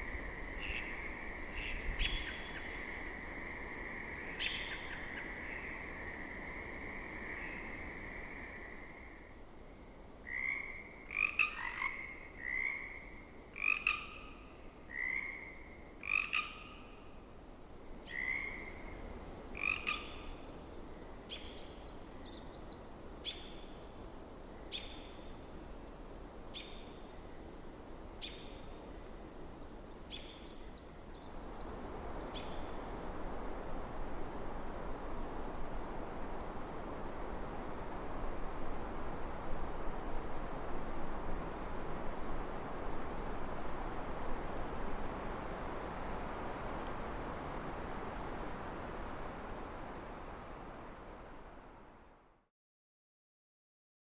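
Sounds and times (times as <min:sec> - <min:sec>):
frog chorus: 0:10.3 - 0:14.3, 0:14.9 - 0:16.6, 0:19.6 - 0:20.0.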